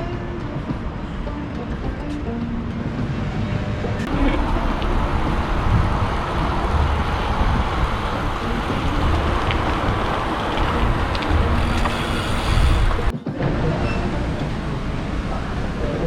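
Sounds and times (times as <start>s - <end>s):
passing traffic: 0.0s - 16.0s
road noise: 0.0s - 16.0s
wind rushing: 2.8s - 13.6s.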